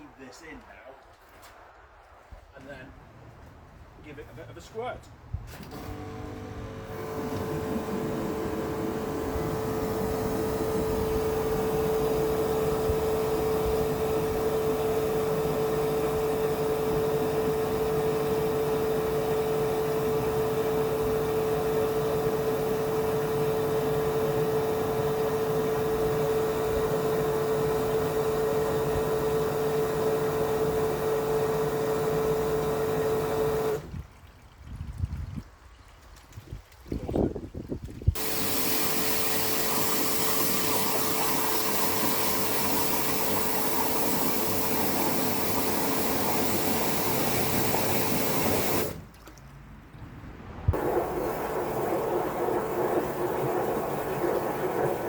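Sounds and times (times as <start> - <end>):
pressure washer whining: 5.5 - 33.9, 38.2 - 49.3, 50.8 - 55.0.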